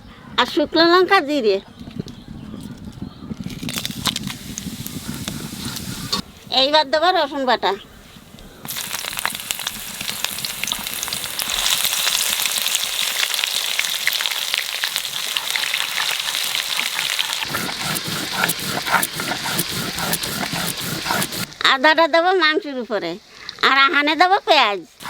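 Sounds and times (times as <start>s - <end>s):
oil sizzling and crackling in pan: 8.7s - 17.5s.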